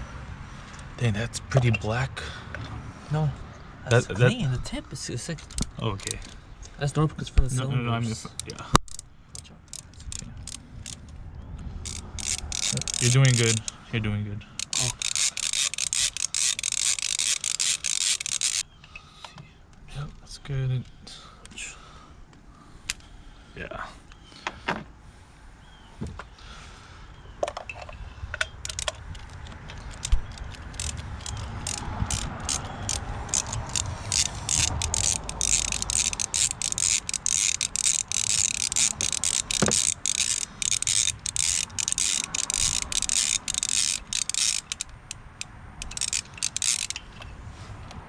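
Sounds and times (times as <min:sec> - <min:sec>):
ratchet wrench clicking: 0:05.4 - 0:06.4, 0:08.3 - 0:11.1, 0:11.8 - 0:13.8, 0:14.6 - 0:18.6, 0:28.3 - 0:47.3.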